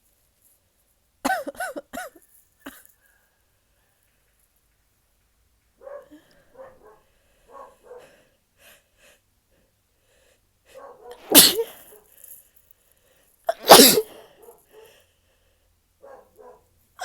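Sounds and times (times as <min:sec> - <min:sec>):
catching breaths: 0:05.9 - 0:13.4, 0:14.0 - 0:15.9
woman sneezing: 0:11.2 - 0:11.9, 0:13.5 - 0:14.3.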